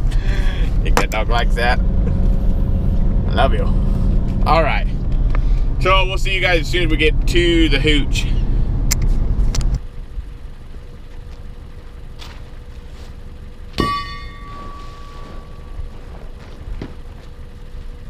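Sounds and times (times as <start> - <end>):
truck engine idling: 0.0 - 18.0
sharp metallic clank: 13.7 - 16.3.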